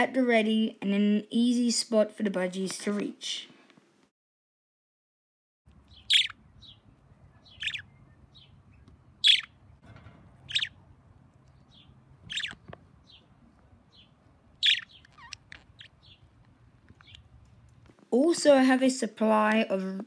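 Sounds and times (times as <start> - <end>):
budgerigars chirping: 5.8 - 9.8, 10.5 - 10.8, 11.5 - 17.3.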